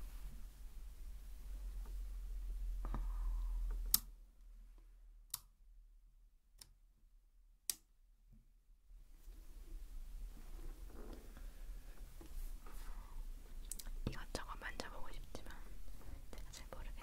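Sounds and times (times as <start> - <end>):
background hum and hiss: 0.0 - 5.5, 9.0 - 17.0.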